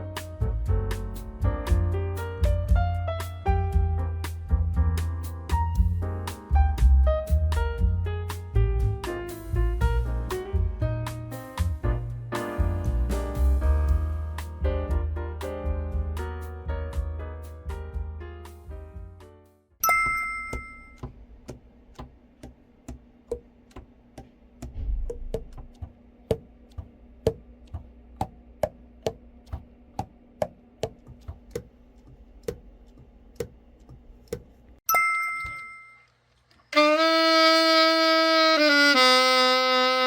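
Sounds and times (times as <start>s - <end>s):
short chime-like tone: 19.8s - 21.0s, 34.9s - 36.1s.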